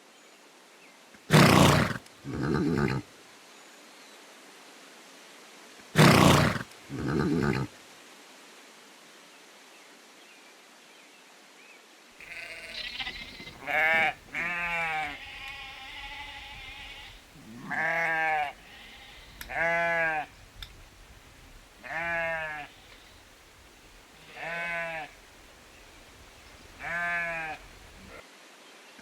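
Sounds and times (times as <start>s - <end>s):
harsh animal calls: 1.3s - 3.0s, 6.0s - 7.7s, 12.3s - 20.3s
sheep bleating: 1.3s - 3.0s, 6.0s - 7.7s, 12.2s - 20.4s, 21.8s - 23.3s, 24.2s - 25.2s, 26.8s - 28.2s.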